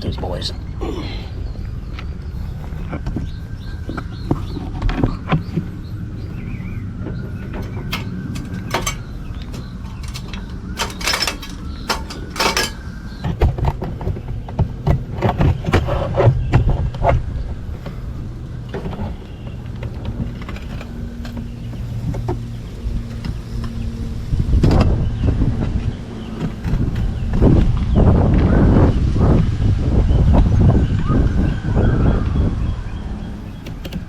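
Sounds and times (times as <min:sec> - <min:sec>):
steady low hum: 0:00.0 - 0:31.1
knocks and clatter: 0:07.0 - 0:17.3.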